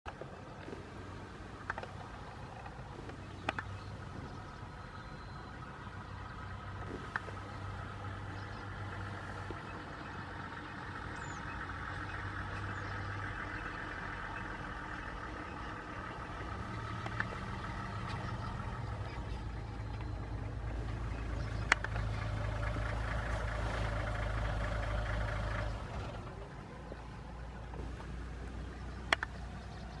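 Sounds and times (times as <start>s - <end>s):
vehicle engine idling: 0.1s - 30.0s
sharp clicks: 2.6s - 3.8s, 17.0s - 18.2s, 21.6s - 22.1s, 29.0s - 29.4s.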